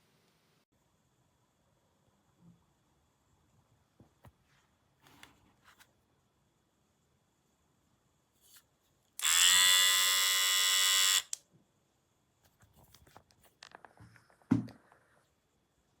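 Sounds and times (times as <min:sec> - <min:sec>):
hair clipper buzzing: 0:09.2 - 0:11.4.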